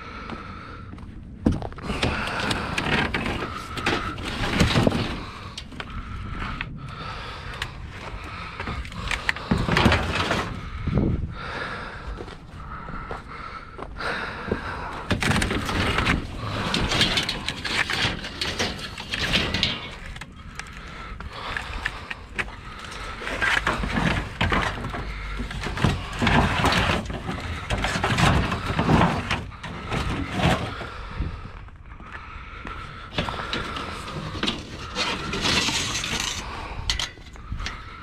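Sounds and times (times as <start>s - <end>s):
scrap metal clanking and rattling: 1.8s - 6.6s, 8.5s - 10.8s, 15.0s - 20.8s, 21.4s - 31.0s, 33.1s - 38.0s.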